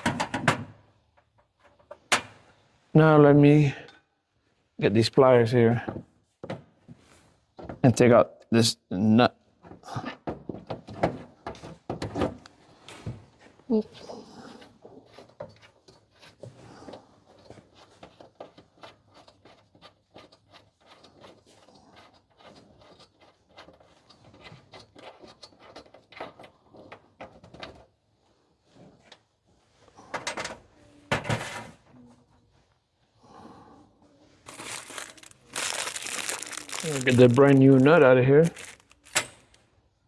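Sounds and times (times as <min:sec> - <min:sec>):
knocks and clatter of parts: 0:00.0 - 0:02.4, 0:09.6 - 0:12.5, 0:22.8 - 0:28.0, 0:30.0 - 0:31.6.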